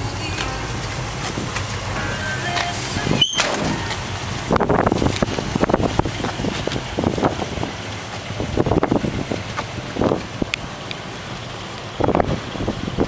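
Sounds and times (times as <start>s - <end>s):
truck engine idling: 0.0s - 13.0s
wind on microphone: 2.8s - 10.5s, 12.0s - 13.0s.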